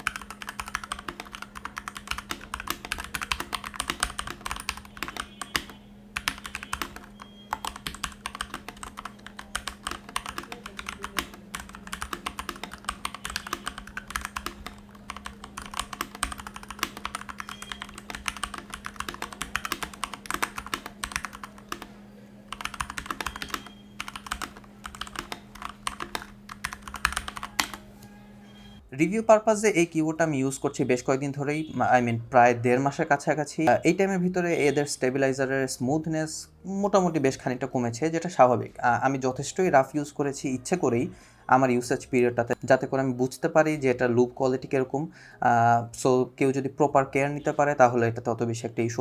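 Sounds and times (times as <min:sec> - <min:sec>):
mechanical keyboard typing: 0:00.0 - 0:21.9, 0:22.5 - 0:27.8.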